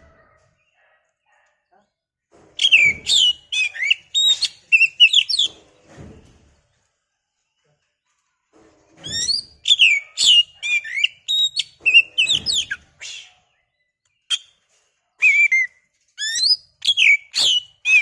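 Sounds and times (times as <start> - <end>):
bird singing whistled phrases: 2.6 - 5.5, 15.2 - 18.0.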